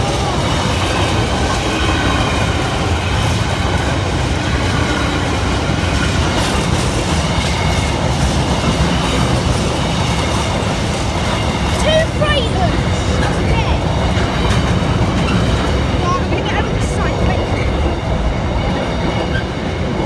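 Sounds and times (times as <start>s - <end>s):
clickety-clack over rail joints: 0.0s - 20.0s
train wheels rumbling on rails: 0.0s - 20.0s.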